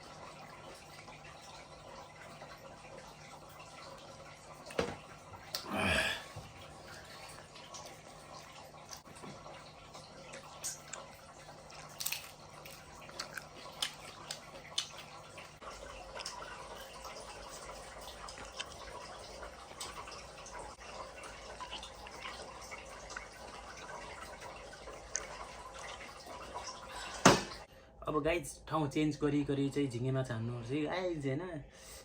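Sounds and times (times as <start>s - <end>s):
crunchy chewing of shrimp: 10.3s - 16.5s, 18.2s - 18.9s.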